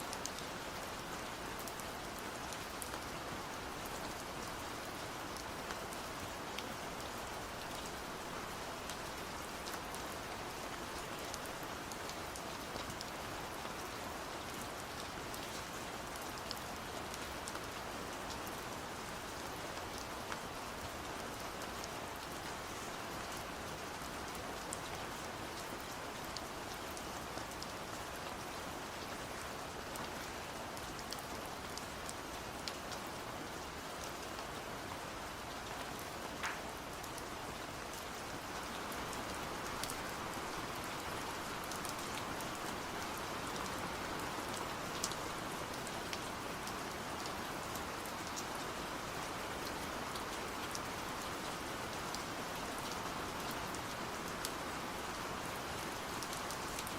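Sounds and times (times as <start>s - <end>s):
raindrops ticking on a surface: 0.0s - 56.9s
steady rain falling: 0.0s - 56.9s.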